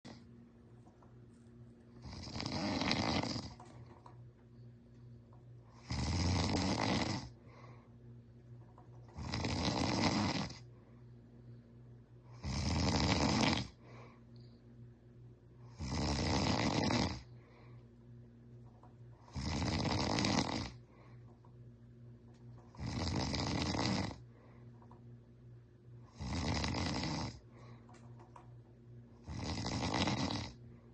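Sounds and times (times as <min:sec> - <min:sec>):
man snoring: 0:02.0 - 0:03.6, 0:05.7 - 0:07.6, 0:09.1 - 0:10.7, 0:12.3 - 0:14.1, 0:15.6 - 0:17.4, 0:19.2 - 0:21.0, 0:22.7 - 0:24.3, 0:26.1 - 0:27.7, 0:29.2 - 0:30.7.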